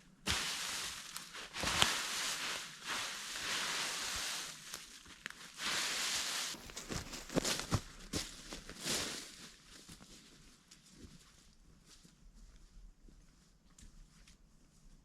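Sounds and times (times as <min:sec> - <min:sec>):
rustling or crunching: 0:00.0 - 0:11.5.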